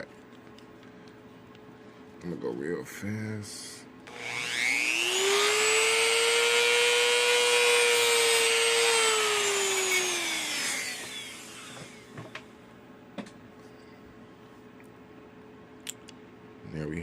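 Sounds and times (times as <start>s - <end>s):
rotary tool cutting metal: 4.1s - 12.1s.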